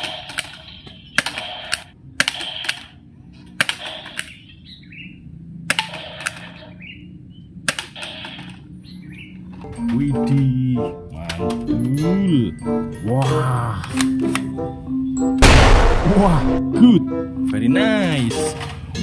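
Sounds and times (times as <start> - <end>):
toy gun firing: 0.0 - 3.0, 3.6 - 4.4, 7.6 - 8.6, 15.4 - 16.6.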